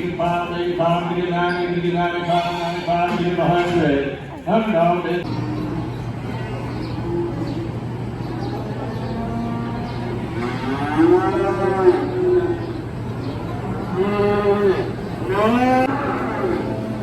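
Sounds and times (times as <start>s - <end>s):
cattle mooing: 5.2s - 17.0s
steady low hum: 5.2s - 17.0s.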